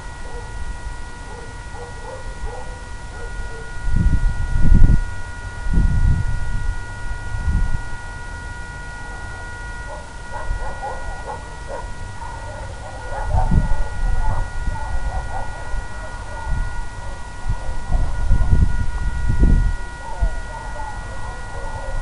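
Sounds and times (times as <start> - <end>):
steady multi-tone whine: 0.0 - 22.0
wind buffeting microphone: 3.8 - 8.0, 13.0 - 20.5.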